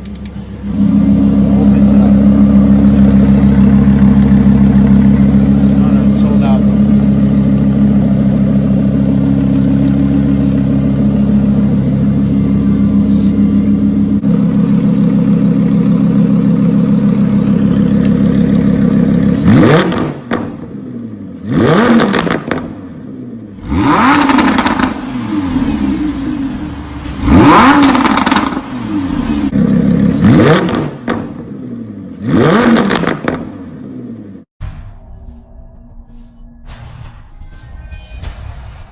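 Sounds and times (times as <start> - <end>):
sports car engine idling and revving: 0.0 - 34.5.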